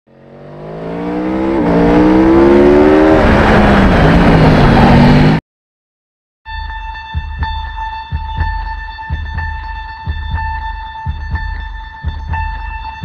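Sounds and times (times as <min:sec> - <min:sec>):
motorcycle engine at full throttle: 0:00.1 - 0:05.4.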